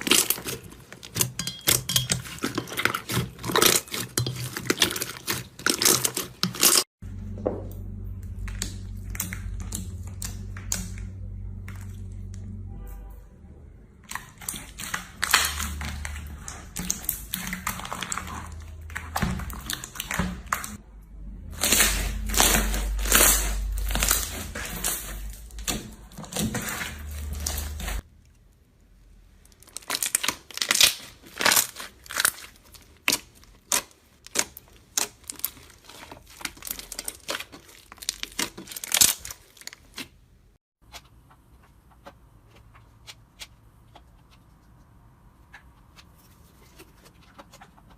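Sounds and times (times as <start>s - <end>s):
slime crackling and popping: 0.0s - 1.2s, 14.0s - 20.8s, 21.5s - 28.1s, 29.4s - 40.3s.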